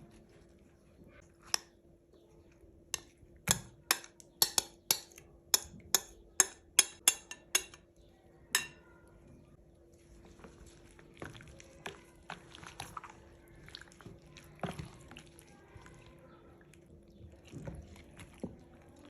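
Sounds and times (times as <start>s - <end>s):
utensils clinking against dishes: 2.9s - 7.9s, 8.5s - 8.9s.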